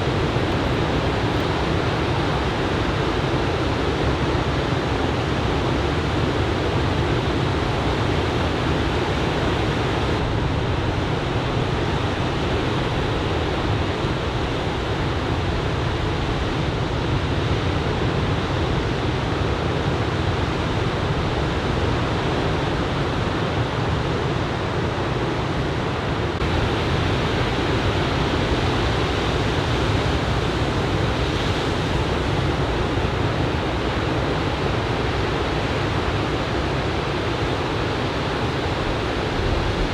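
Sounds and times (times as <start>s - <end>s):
ocean surf breaking on beach: 26.4s - 39.9s.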